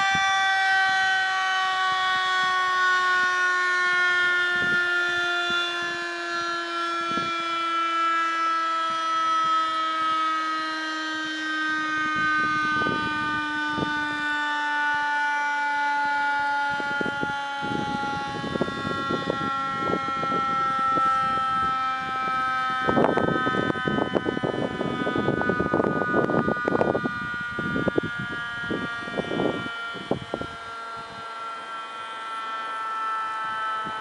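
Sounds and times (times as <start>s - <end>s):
siren long falling tone: 0.0s - 34.0s.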